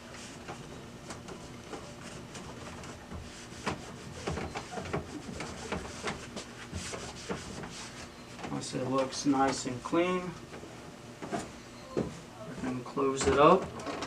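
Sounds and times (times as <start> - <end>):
cloth rubbing on glass: 1.3 - 8.2.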